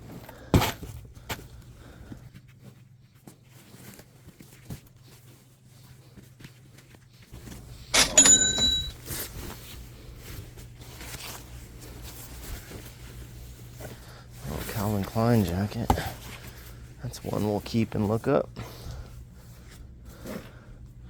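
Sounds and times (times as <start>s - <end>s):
rummaging and handling noises: 0.0s - 18.3s
low steady hum: 0.0s - 21.0s
sharp metallic clink: 8.0s - 9.0s.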